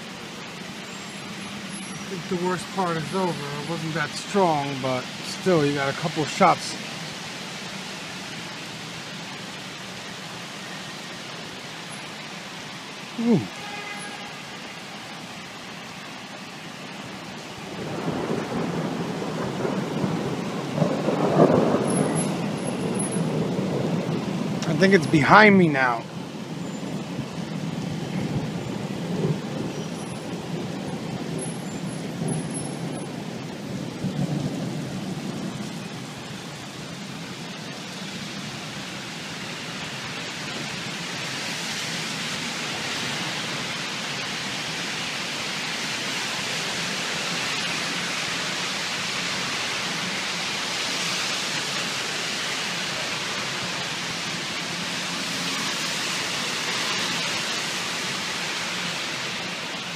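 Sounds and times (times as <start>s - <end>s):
heavy rain pouring: 0.0s - 59.9s
thunder rumbling: 17.6s - 25.3s.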